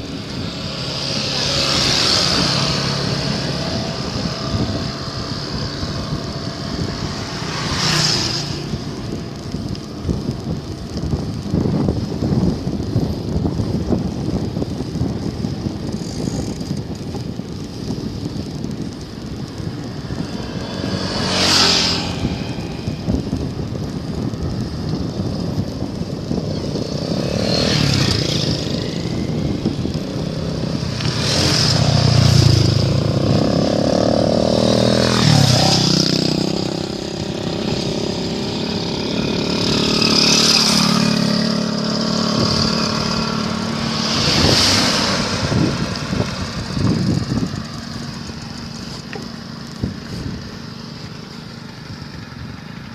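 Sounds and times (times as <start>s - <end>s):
loud engine passing: 0.0s - 9.4s, 19.9s - 23.4s, 26.4s - 52.9s
road traffic passing: 0.0s - 52.9s
wind noise on microphone: 0.0s - 52.9s.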